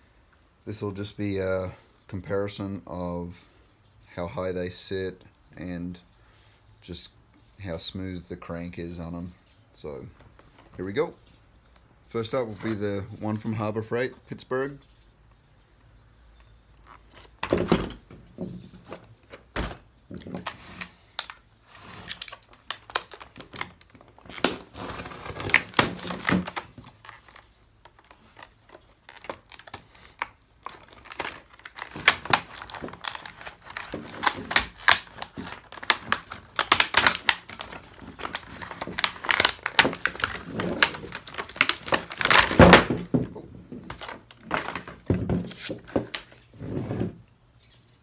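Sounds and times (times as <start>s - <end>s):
packaging tearing and rustling: 20.4s - 42.9s
metal parts clunking: 42.1s - 43.1s.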